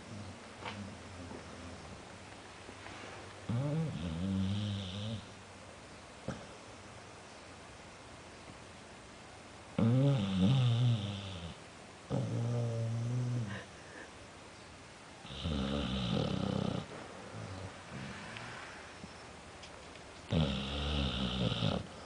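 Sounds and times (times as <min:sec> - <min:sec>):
pet snoring: 0:03.5 - 0:05.3, 0:09.8 - 0:13.6, 0:15.2 - 0:18.8, 0:20.3 - 0:22.0.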